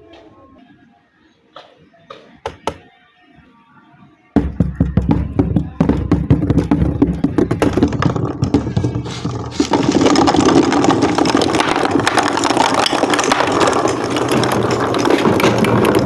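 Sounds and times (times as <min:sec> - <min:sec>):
marbles rattling down a track: 0:07.7 - 0:16.0.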